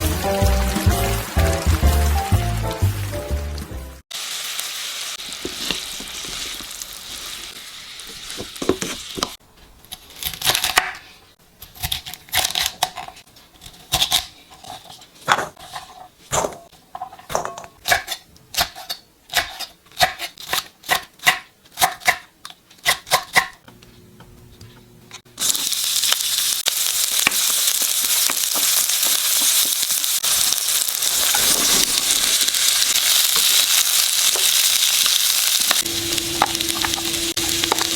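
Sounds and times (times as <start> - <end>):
frying pan sizzling: 0.0 - 9.4, 25.3 - 37.9.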